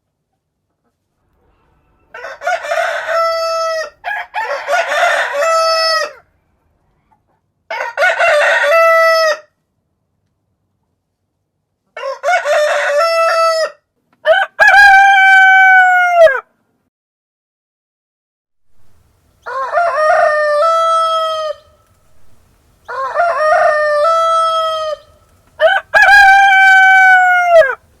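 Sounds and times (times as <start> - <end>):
rooster crowing: 1.9 - 6.3, 7.7 - 9.5, 12.0 - 16.4, 18.8 - 27.9.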